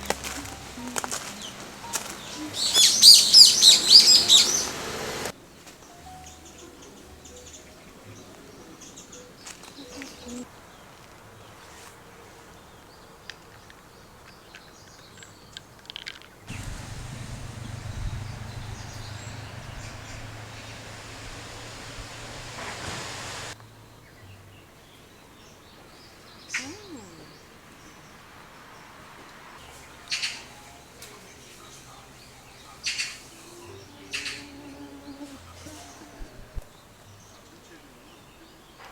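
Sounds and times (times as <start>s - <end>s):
bird chirps: 0.0s - 10.5s, 16.5s - 23.6s
rushing noise with low hum: 16.5s - 23.6s.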